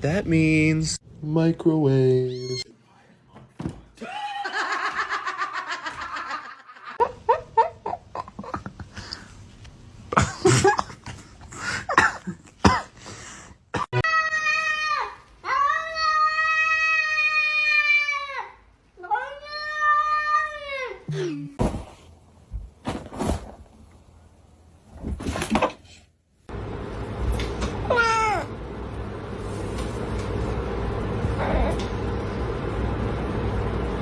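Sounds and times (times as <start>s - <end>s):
cat yowling: 27.8s - 28.5s.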